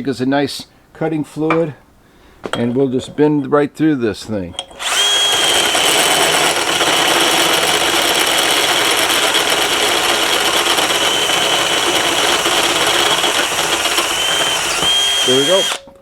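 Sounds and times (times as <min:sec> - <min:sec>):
power drill cutting metal: 0:04.7 - 0:15.9.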